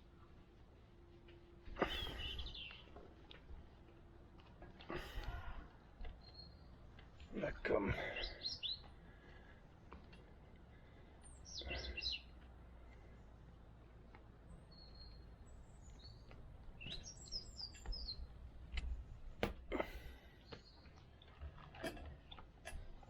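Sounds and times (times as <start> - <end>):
faint low hum: 0.0 - 23.0
bird chirping: 1.8 - 3.4, 5.0 - 9.5, 10.2 - 21.6.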